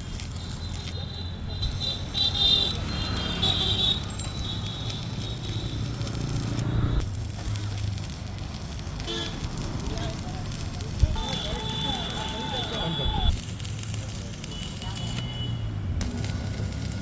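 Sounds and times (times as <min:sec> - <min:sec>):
arc welding crackling: 0:00.0 - 0:17.0.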